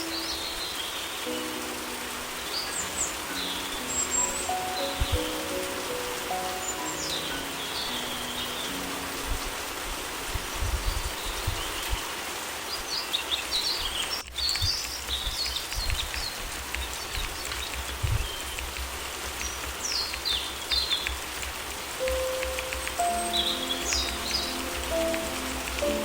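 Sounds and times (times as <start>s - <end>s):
birds chirping: 0.0s - 26.0s
steady rain falling: 0.0s - 26.0s.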